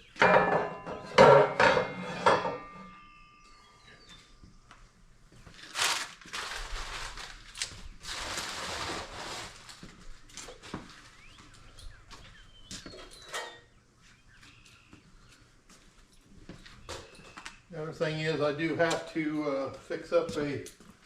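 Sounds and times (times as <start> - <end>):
packing material rustling: 5.4 - 11.2.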